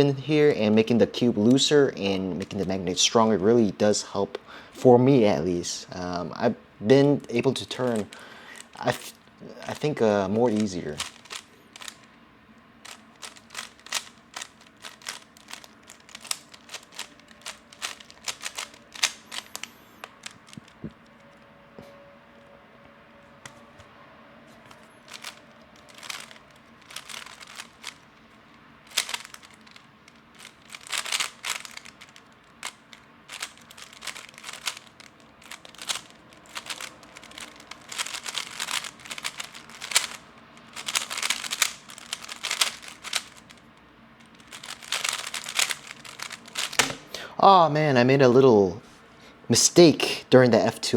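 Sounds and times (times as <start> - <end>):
plastic cube clicks and clacks: 10.5 - 12.0, 12.8 - 20.8, 25.1 - 28.0, 28.9 - 29.8, 30.4 - 43.6, 44.3 - 47.0.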